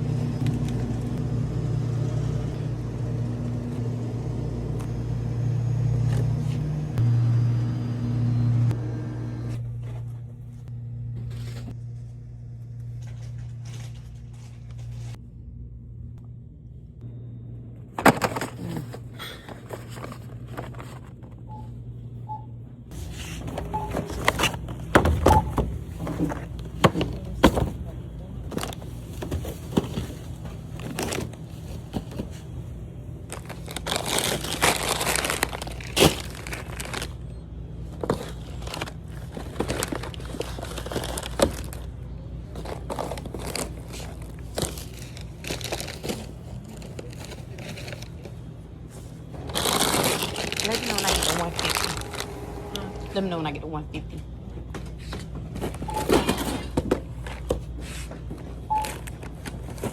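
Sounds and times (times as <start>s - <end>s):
steady low hum: 0.0s - 59.9s
items knocking and thudding: 17.9s - 21.4s, 23.3s - 32.5s
plastic packaging crinkling: 33.3s - 37.3s, 37.9s - 48.4s, 49.3s - 52.5s.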